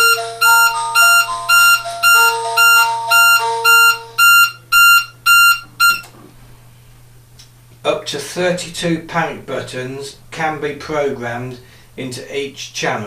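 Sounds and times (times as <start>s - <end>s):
lower tune-like notes: 0.0s - 6.1s
shrill electronic alarm beeping: 0.0s - 6.1s.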